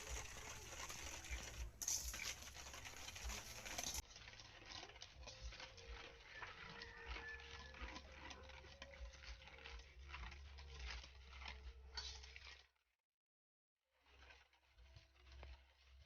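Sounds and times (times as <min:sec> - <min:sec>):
soft clicks and scrapes of mixing: 0:00.0 - 0:12.9, 0:14.0 - 0:16.0.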